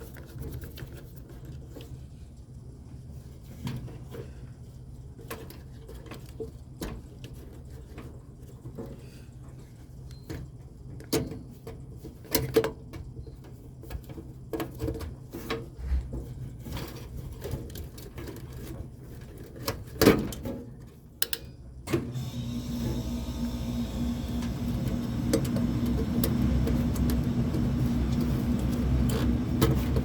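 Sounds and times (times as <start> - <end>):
steady low hum: 23.2 - 30.0
handling knocks and clicks: 24.8 - 30.0.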